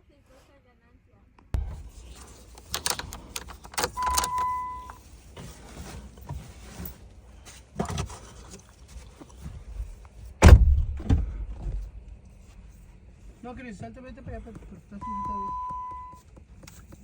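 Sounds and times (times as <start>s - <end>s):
keys and metal tools rattling: 1.9s - 5.0s
short electronic beep: 4.0s - 5.0s, 15.0s - 16.2s
loud thump: 10.4s - 11.9s.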